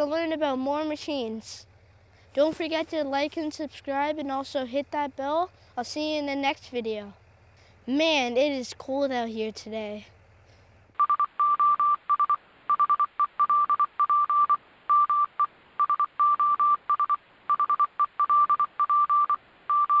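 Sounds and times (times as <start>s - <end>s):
morse code beeps: 11.0s - 20.0s.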